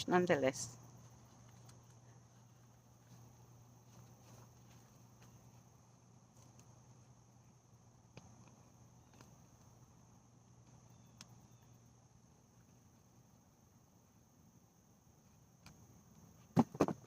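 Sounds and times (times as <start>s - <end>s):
high-pitched insect trill: 10.8s - 15.1s.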